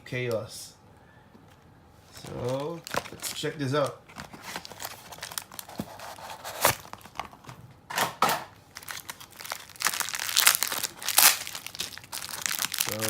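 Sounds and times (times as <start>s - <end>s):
plastic packaging crinkling: 2.1s - 7.5s, 8.7s - 13.0s.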